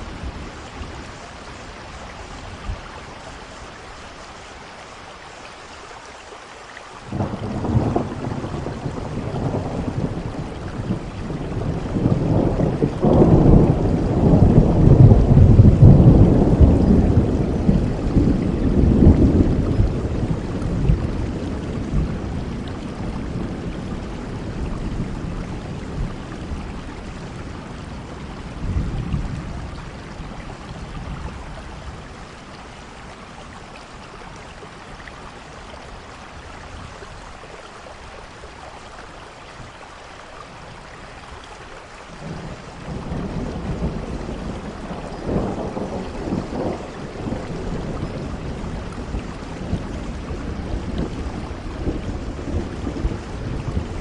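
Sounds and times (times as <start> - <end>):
steady rain: 0.0 - 54.0
thunder rumbling: 7.1 - 33.2, 42.2 - 54.0.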